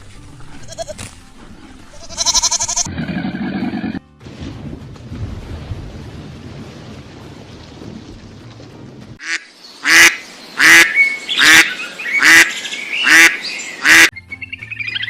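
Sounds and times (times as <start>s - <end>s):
duck quacking: 9.2s - 14.1s.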